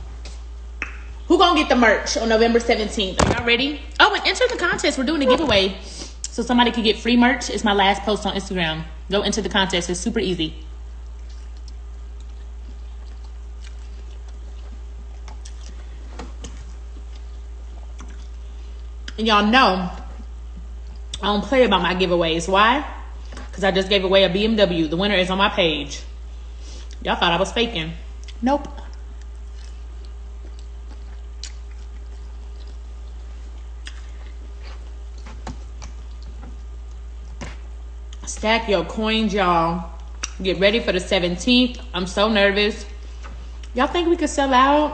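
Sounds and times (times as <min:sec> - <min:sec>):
steady low hum: 0:00.0 - 0:44.9
person chewing food: 0:10.9 - 0:19.2, 0:20.0 - 0:21.2, 0:28.2 - 0:38.2.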